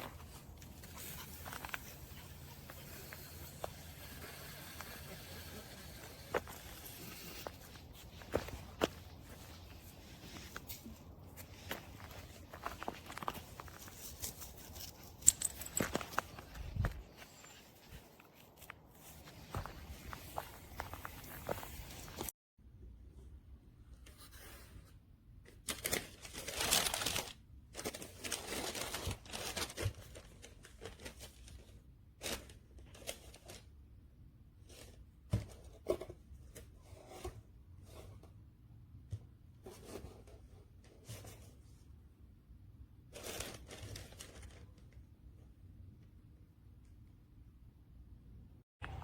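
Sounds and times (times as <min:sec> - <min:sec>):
rustling and tearing: 0:00.0 - 0:22.3, 0:25.7 - 0:33.7.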